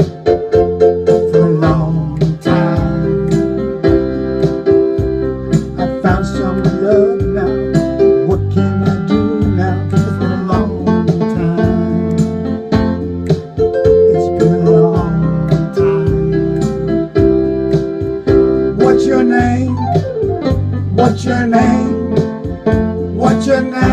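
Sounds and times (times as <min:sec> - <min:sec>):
keyboard chords: 0:00.0 - 0:23.9
steady bass line: 0:00.0 - 0:23.9
drum hits: 0:08.9 - 0:23.9.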